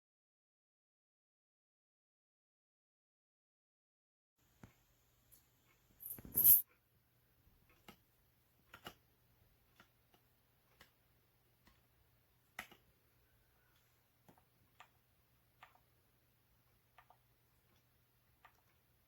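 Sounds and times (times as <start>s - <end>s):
faint clicks and ticks: 4.6s - 19.0s.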